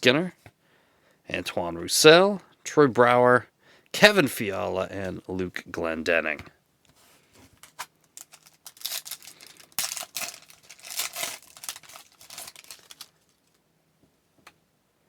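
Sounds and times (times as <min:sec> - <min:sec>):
wrapper crinkling and tearing: 0:07.6 - 0:13.6.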